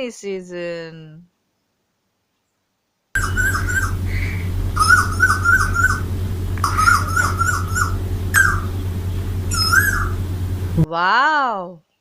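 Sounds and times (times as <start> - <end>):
cuckoo singing: 3.2 - 10.9
steady low hum: 3.2 - 10.9.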